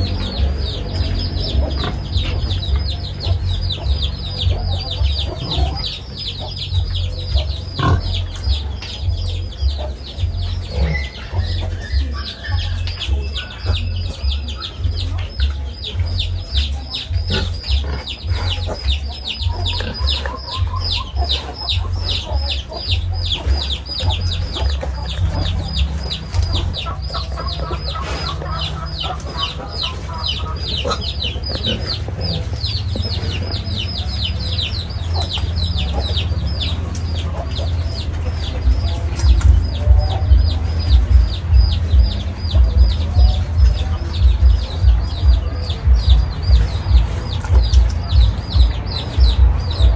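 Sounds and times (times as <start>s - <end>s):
low thumps: 0.0s - 19.9s, 31.5s - 49.9s
chicks peeping: 0.0s - 49.9s
low rumble: 0.0s - 49.9s.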